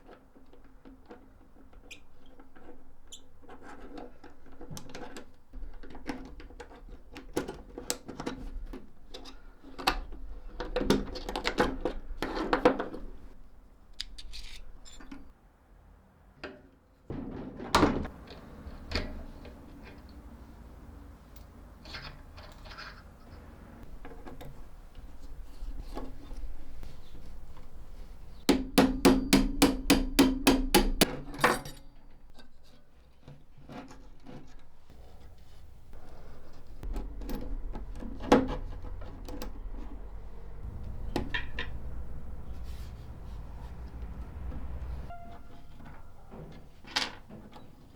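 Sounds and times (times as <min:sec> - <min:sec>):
ringing metal strikes: 0:34.9 - 0:47.5.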